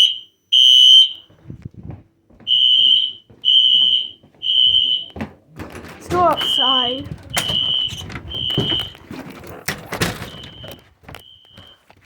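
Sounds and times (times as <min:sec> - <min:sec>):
fire alarm horn beeps: 0:00.0 - 0:01.3, 0:02.5 - 0:05.2, 0:06.3 - 0:09.0, 0:10.2 - 0:11.9.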